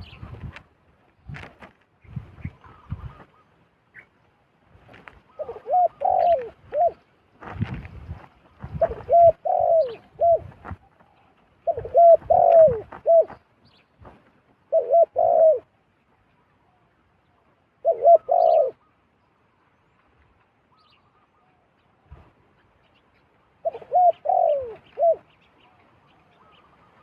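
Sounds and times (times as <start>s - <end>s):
brief rustle: 0.3s - 1.9s
dove cooing: 5.3s - 7.1s, 8.6s - 13.4s, 14.6s - 15.8s, 17.8s - 18.9s, 23.6s - 27.0s.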